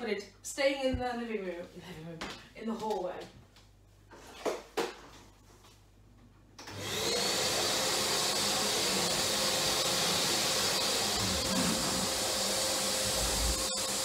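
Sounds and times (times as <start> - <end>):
vacuum cleaner motor whine: 6.6 - 14.0.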